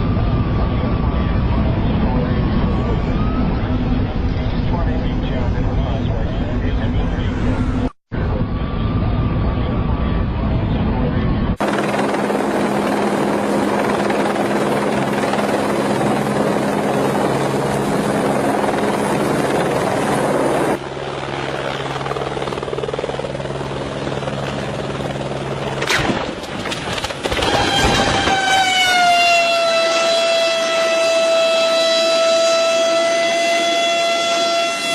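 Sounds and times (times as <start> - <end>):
siren wailing: 0.0 - 4.5, 5.8 - 20.8, 27.3 - 34.9
helicopter rotor and engine: 0.0 - 34.9.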